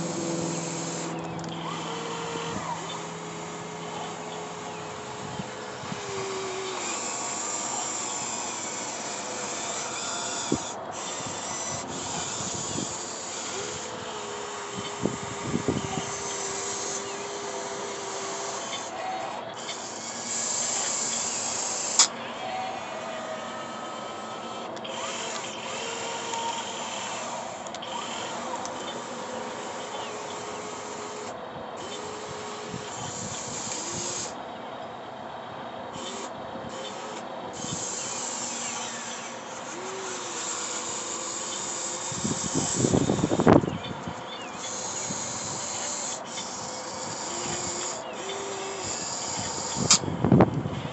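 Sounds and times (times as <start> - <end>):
model excavator motor whine: 0.0 - 50.9
sharp click: 49.7 - 50.6.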